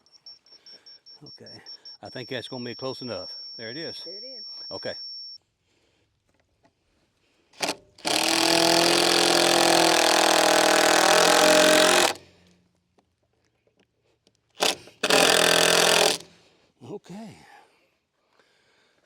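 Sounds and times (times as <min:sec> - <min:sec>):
power drill driving screw into wood: 0:07.6 - 0:12.4, 0:14.6 - 0:16.4.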